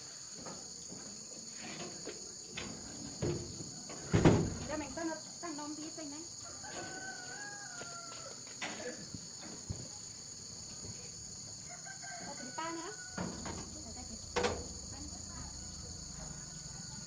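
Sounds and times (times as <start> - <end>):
high insect chirring: 0.0 - 17.0.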